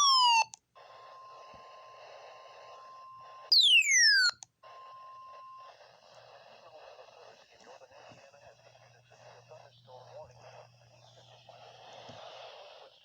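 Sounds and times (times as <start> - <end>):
falling electronic sweeps: 3.5 - 4.3
faint steady alert tone: 3.5 - 4.4.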